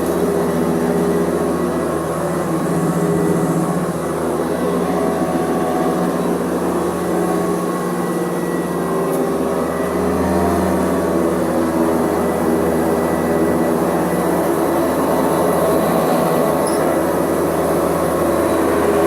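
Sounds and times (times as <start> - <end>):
vacuum cleaner running: 0.0 - 19.0.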